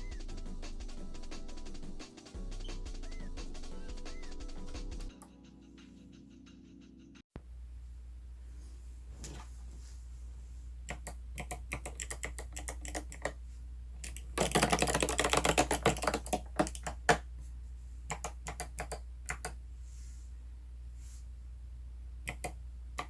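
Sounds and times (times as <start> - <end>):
typing on mechanical keyboard: 10.9 - 13.4, 14.0 - 17.2, 18.1 - 19.6.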